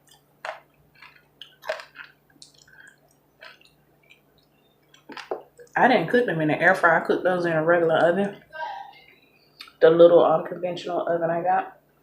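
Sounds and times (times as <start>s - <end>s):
chewing and wet mouth smacks: 0.0s - 5.8s.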